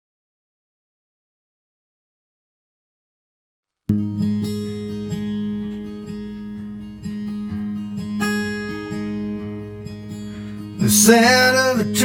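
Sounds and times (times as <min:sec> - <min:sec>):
acoustic guitar strumming: 0:03.9 - 0:12.0.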